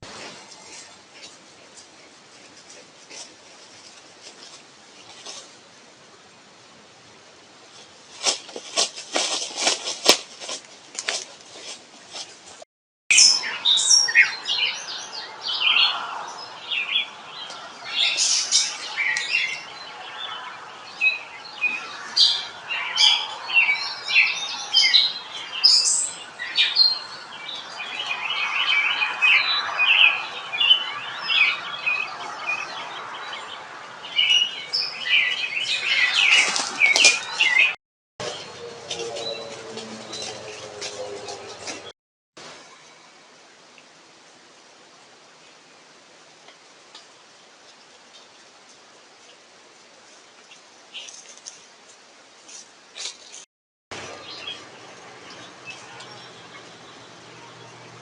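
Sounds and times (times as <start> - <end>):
wild birds chirping: 13.1 - 41.9, 47.0 - 58.0.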